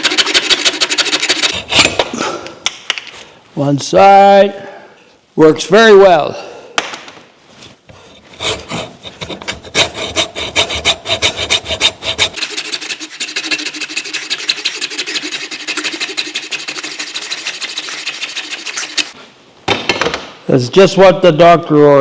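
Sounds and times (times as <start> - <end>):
hacksaw sawing: 0.0 - 1.8, 8.4 - 19.2.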